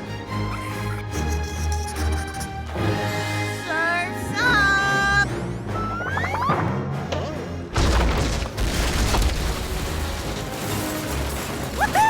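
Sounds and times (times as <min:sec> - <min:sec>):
cartoon music: 0:03.7 - 0:06.8.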